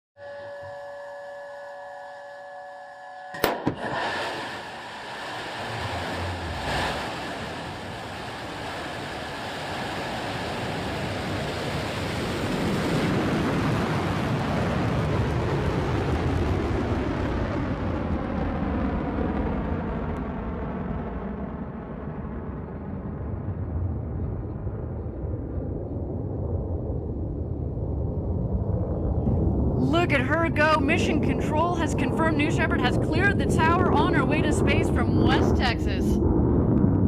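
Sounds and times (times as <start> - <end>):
steady tone: 0.2 - 10.1
sharp crack: 3.3 - 8.8
rocket engine roar and rumble: 3.3 - 37.0.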